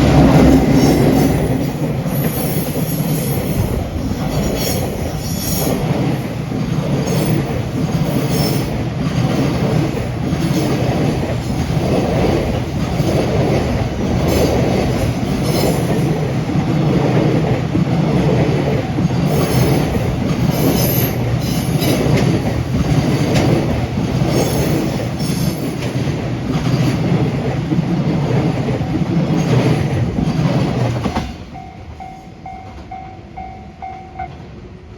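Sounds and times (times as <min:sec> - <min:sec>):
wheels clicking at rail joints: 0:00.0 - 0:34.5
freight train rolling past: 0:00.0 - 0:34.9
level crossing warning bell: 0:31.2 - 0:34.5.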